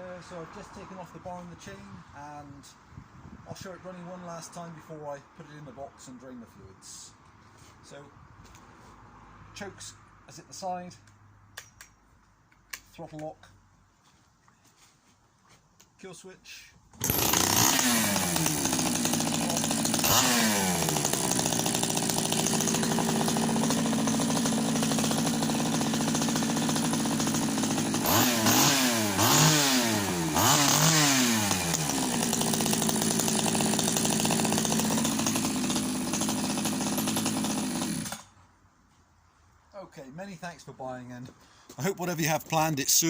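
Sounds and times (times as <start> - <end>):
chainsaw engine revving and idling: 17.0 - 38.3, 41.8 - 43.0.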